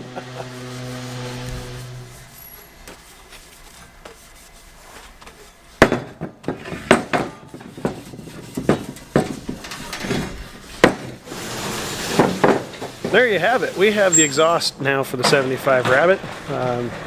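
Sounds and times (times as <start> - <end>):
hard objects knocking and clattering: 5.8 - 13.2.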